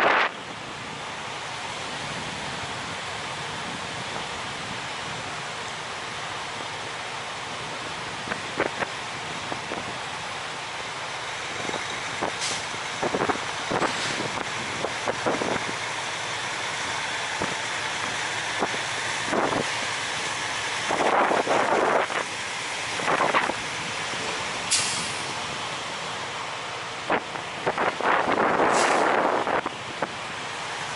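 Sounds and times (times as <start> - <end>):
heavy trucks noise: 0.0 - 30.9
wind buffeting microphone: 11.5 - 25.8, 27.0 - 30.2
sharp hiss: 12.4 - 12.8, 24.7 - 25.4, 28.7 - 29.3.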